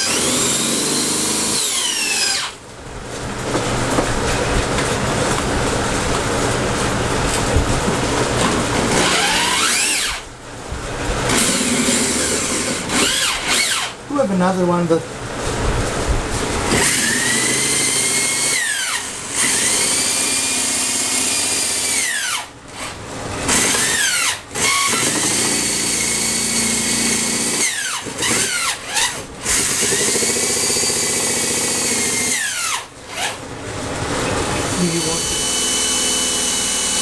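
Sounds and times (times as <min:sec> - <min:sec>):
electric drill whining: 0:00.0 - 0:02.6, 0:08.8 - 0:10.3, 0:11.3 - 0:14.0, 0:16.7 - 0:33.4, 0:34.6 - 0:37.0.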